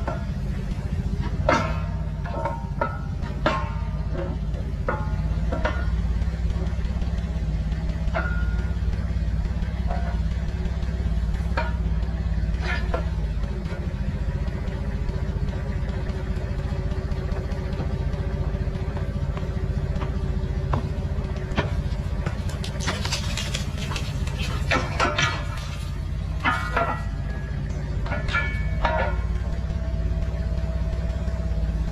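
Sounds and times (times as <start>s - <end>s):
excavator engine running: 0.0s - 31.9s
cracks and clatter: 18.8s - 29.6s.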